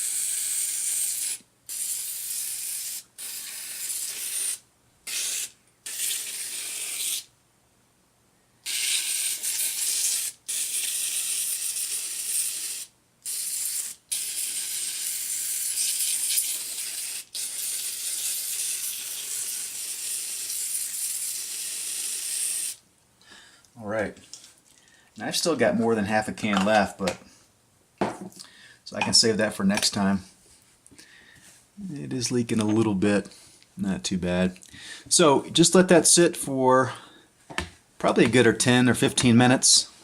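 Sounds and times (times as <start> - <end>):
aerosol can spraying foam: 0.0 - 7.3, 8.6 - 22.8.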